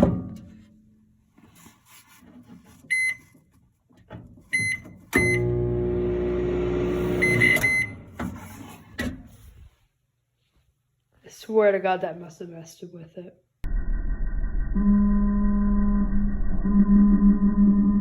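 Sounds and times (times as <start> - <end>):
microwave keypad beeping: 2.9 - 3.2, 4.6 - 5.6, 7.0 - 8.1
microwave oven humming: 5.2 - 8.2.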